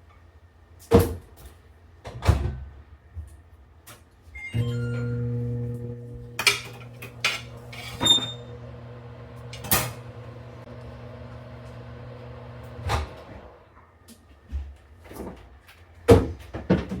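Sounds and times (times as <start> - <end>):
microwave oven humming: 4.4 - 13.8
microwave thump: 12.6 - 13.4.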